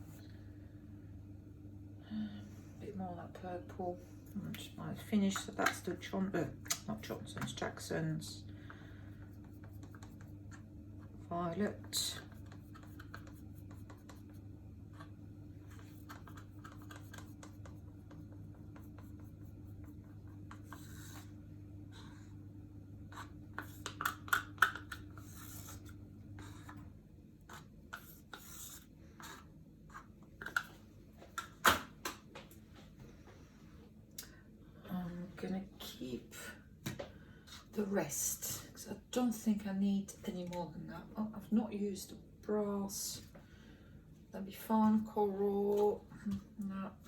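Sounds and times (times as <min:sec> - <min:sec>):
low steady hum: 0:00.0 - 0:47.0
plastic paint cups scraping and tapping: 0:12.1 - 0:14.4, 0:15.7 - 0:19.2, 0:23.1 - 0:25.9, 0:27.5 - 0:31.5.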